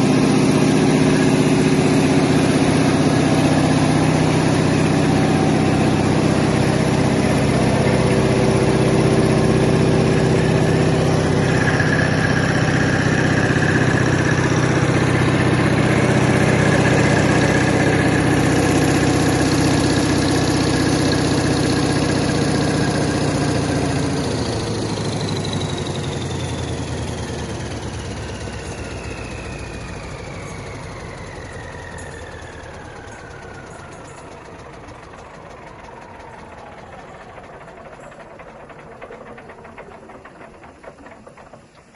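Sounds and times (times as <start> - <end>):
whine sliding down in pitch: 0.0 - 24.1
diesel generator running: 0.0 - 41.9.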